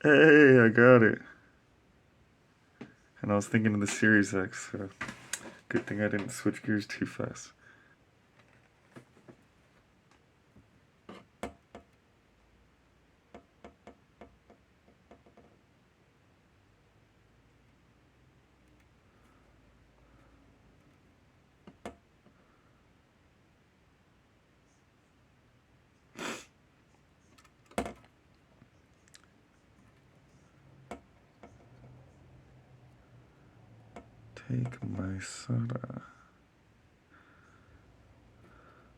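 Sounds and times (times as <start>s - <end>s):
person sniffing: 26.2s - 26.6s.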